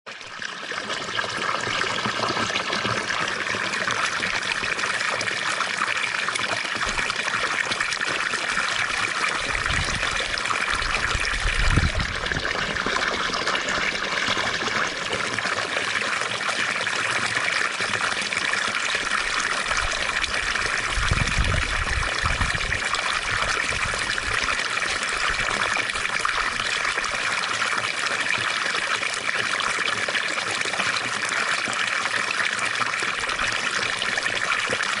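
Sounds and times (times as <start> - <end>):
fountain water splashing: 0.2 - 35.0.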